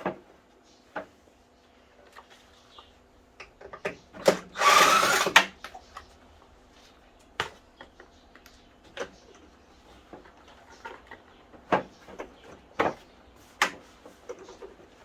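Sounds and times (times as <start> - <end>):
drill-driver whirring: 4.5 - 5.5.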